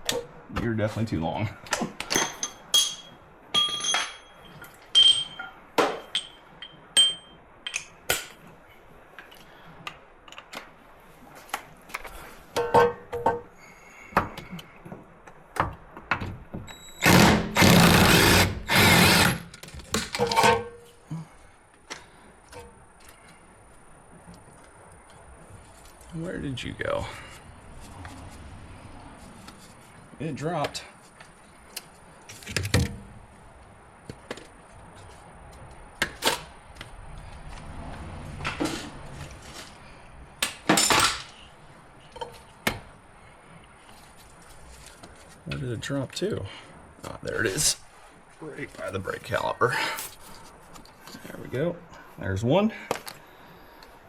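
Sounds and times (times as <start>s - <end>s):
tools clicking and knocking: 1.7s - 8.4s
power tool bursts: 16.8s - 19.5s
metal parts clattering: 40.7s - 41.4s.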